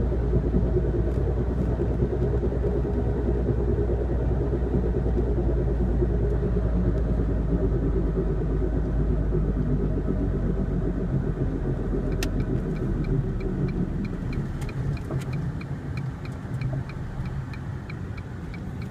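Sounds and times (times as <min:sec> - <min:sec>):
road and wheel rumble: 0:00.0 - 0:18.9
light regular ticking: 0:06.2 - 0:18.9.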